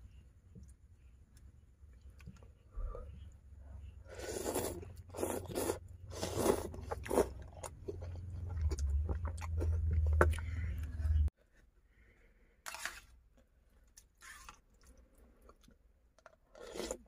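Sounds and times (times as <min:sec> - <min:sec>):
low rumble: 0:07.7 - 0:11.3.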